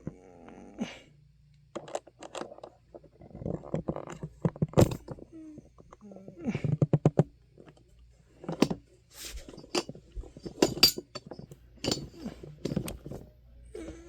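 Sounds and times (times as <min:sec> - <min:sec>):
parts and tools clicking and clinking: 0:03.7 - 0:05.2, 0:08.4 - 0:13.2.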